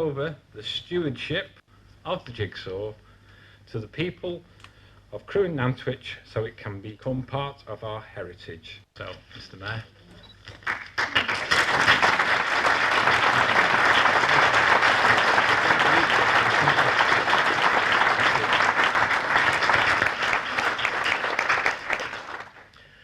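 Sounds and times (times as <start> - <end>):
audience applauding: 10.5 - 22.7.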